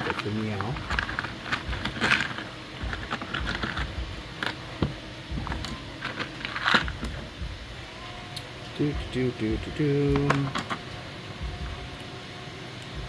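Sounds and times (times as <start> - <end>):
plastic parts clicking and knocking: 0.0 - 7.3, 10.1 - 10.8.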